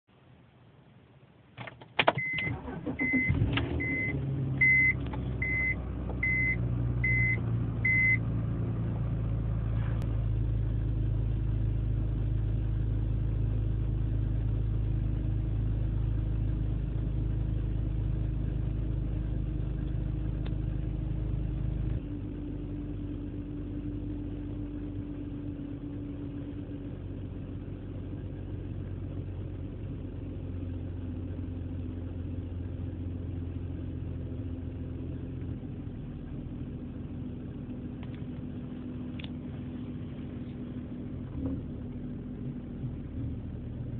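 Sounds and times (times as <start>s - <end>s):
car engine idling: 0.2s - 43.9s
dashboard chime beeping: 3.1s - 8.2s.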